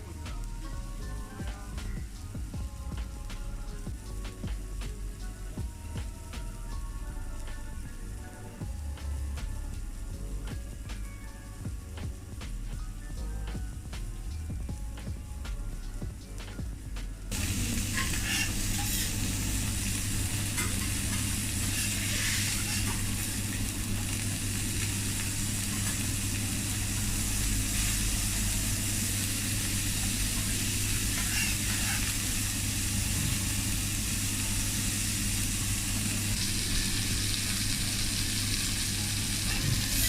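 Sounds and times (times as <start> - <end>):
low hum: 0.0 - 40.0
food sizzling on griddle: 0.1 - 11.6, 17.2 - 40.0
spatula scraping hot plate: 17.6 - 19.2, 20.4 - 23.4, 30.8 - 32.4.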